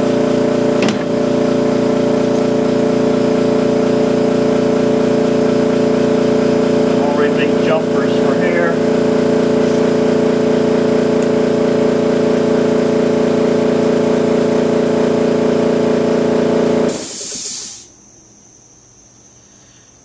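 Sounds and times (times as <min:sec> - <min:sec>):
electric motor humming: 0:00.0 - 0:17.4
air hissing: 0:16.9 - 0:17.9.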